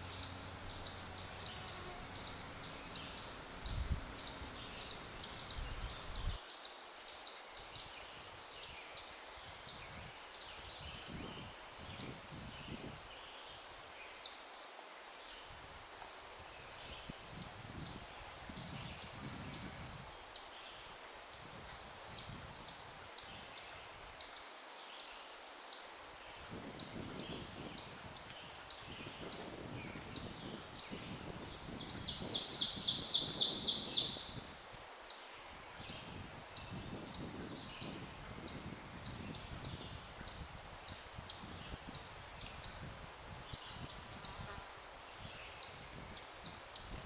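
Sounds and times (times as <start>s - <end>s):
low wind noise: 0.0s - 6.5s, 7.6s - 14.0s, 15.3s - 24.2s, 26.0s - 47.0s
small birds chirping: 0.0s - 13.6s, 26.8s - 34.4s.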